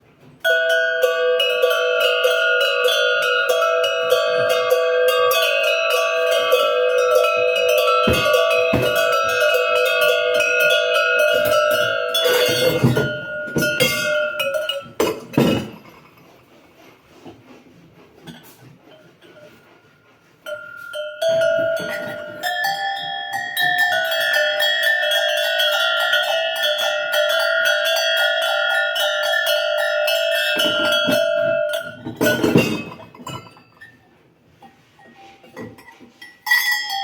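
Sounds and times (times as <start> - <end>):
metal bells clanging: 0.4 - 16.3, 20.4 - 37.0
handling noises: 6.4 - 22.6.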